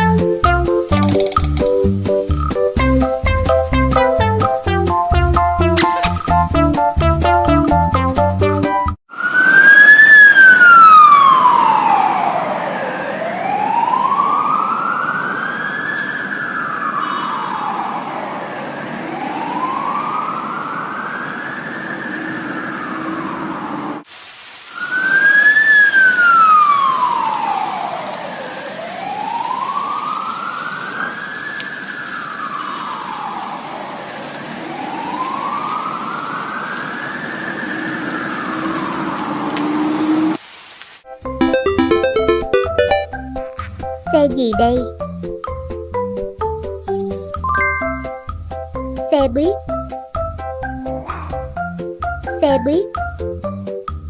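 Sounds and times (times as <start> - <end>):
fire truck siren wailing: 9.1 - 24.0, 24.8 - 40.4
short bit of music: 41.4 - 43.2.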